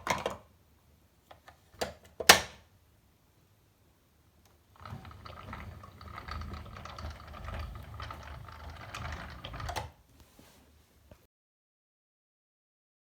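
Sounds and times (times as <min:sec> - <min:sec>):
toy cars cleaned by hand: 0:04.8 - 0:10.6.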